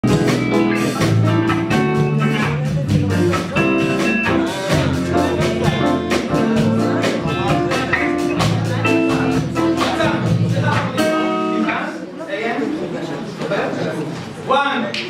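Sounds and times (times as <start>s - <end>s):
steady beat: 0.0s - 11.7s
guitar chords: 0.0s - 11.8s
jazz instrumental music: 0.0s - 11.9s.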